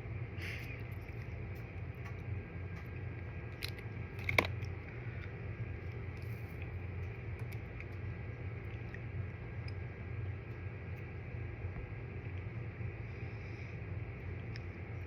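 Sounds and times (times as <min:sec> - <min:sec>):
steady low hum: 0:00.0 - 0:15.0
close-up chewing: 0:00.5 - 0:11.2.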